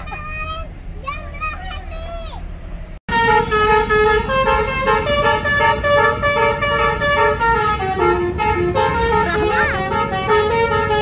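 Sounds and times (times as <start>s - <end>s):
musical bus horn playing tune: 3.1s - 11.0s.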